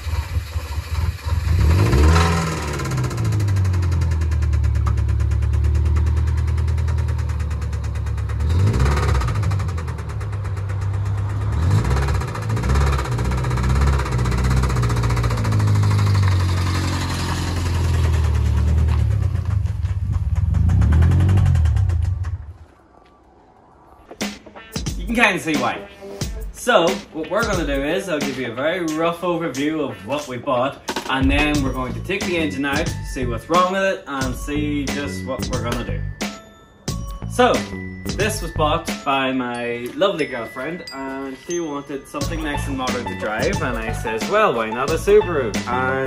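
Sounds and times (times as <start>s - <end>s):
car engine revving: 0.0s - 22.7s
heavy engine knock: 2.8s - 17.0s.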